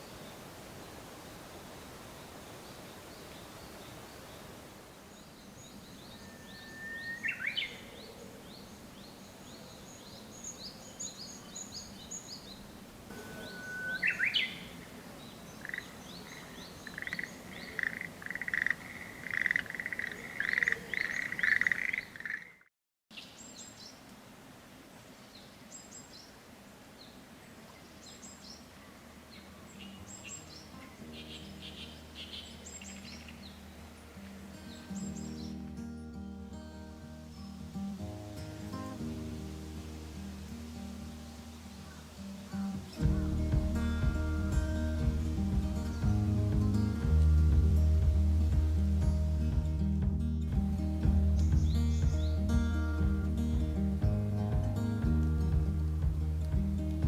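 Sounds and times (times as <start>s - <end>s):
faint high bird chirps: 5.2s - 24.0s
songbird whistling song: 5.3s - 23.9s, 51.3s - 53.3s
rapid loud repeated bird notes: 13.1s - 22.6s, 41.8s - 57.0s
music: 34.2s - 57.0s.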